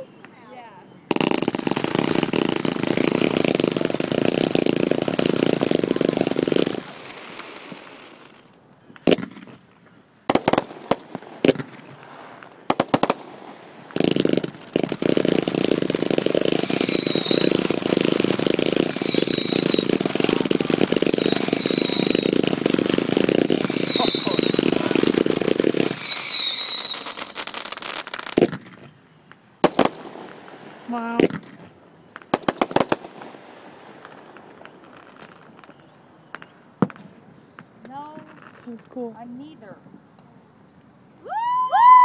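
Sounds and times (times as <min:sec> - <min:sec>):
fireworks crackling: 0:00.0 - 0:39.8
fireworks bangs: 0:01.0 - 0:39.6
falling firework whistle: 0:16.1 - 0:28.3, 0:41.2 - 0:42.0.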